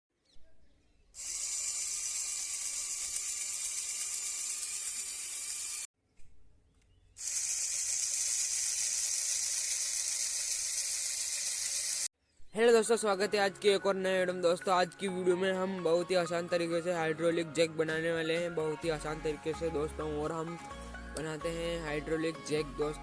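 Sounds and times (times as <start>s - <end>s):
small motor whining: 1.2s - 5.9s, 7.2s - 12.1s.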